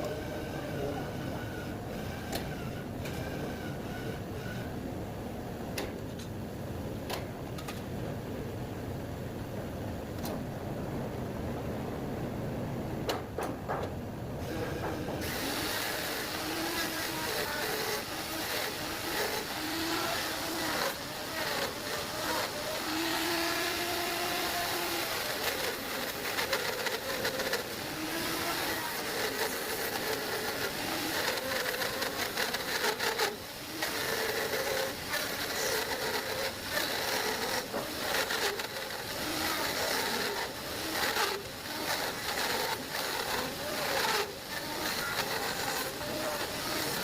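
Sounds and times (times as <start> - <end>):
power tool cutting wood: 0.0 - 4.7, 14.4 - 47.0.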